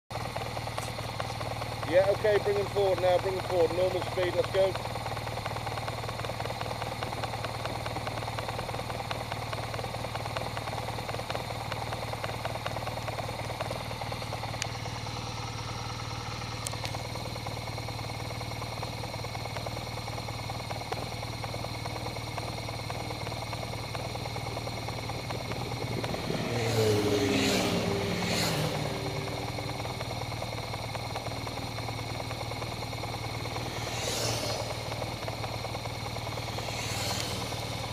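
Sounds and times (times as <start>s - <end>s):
low engine hum: 0.1s - 37.9s
motorcycles passing: 23.7s - 37.9s.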